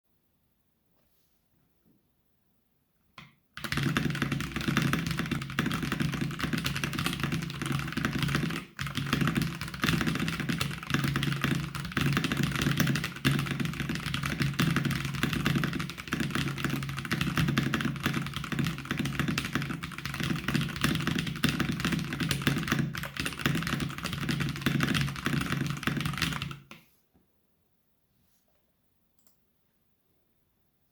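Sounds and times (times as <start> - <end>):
fast mechanical keyboard typing: 3.6 - 26.8.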